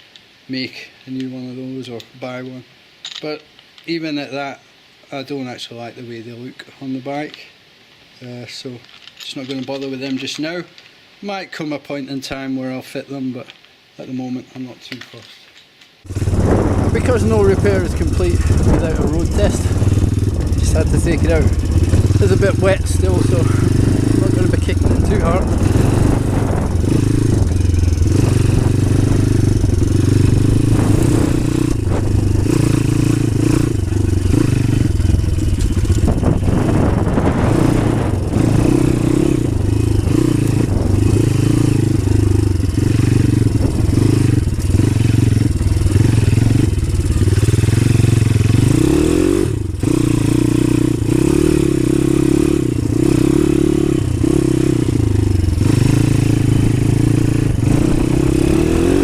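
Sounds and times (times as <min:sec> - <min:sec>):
motorcycle engine revving: 0:16.0 - 0:59.0.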